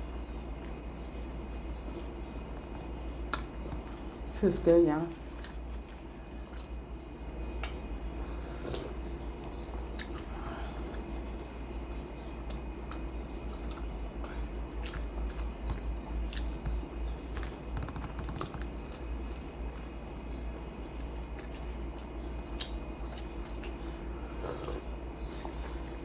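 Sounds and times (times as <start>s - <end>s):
steady low hum: 0.0s - 26.0s
chewing food: 5.1s - 26.0s.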